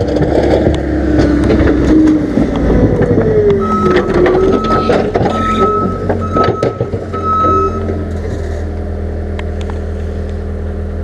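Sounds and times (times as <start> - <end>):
diesel engine running: 0.0 - 11.0
short reversing beeps: 3.6 - 7.8.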